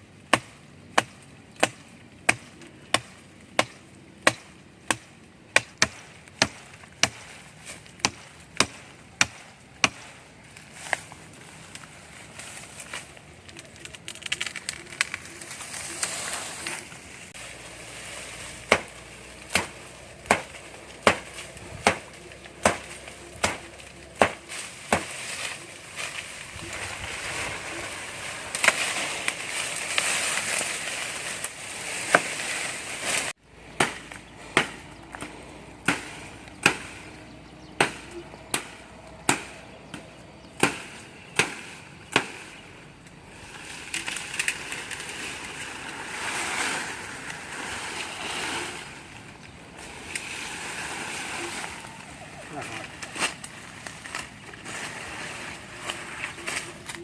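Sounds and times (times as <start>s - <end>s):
blade chopping wood: 18.7s - 25.1s, 37.8s - 40.0s.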